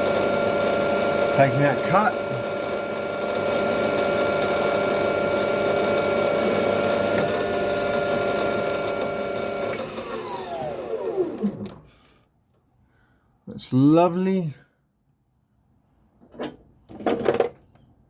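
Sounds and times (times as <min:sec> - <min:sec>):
lathe spinning down: 0:00.0 - 0:11.7
lathe motor and gears whining: 0:00.0 - 0:11.8.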